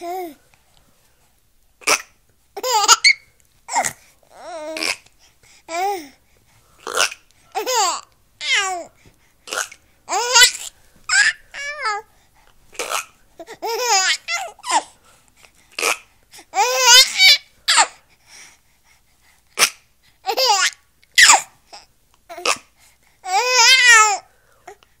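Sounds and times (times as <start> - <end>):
baby laughing: 2.6 - 3.9, 6.9 - 8.8, 12.8 - 14.9.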